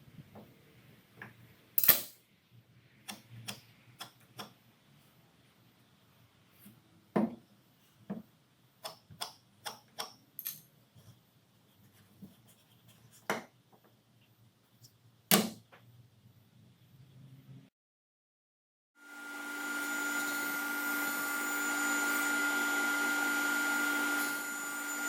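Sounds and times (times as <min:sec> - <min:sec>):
wood and hand tools knocking: 0:07.2 - 0:07.4.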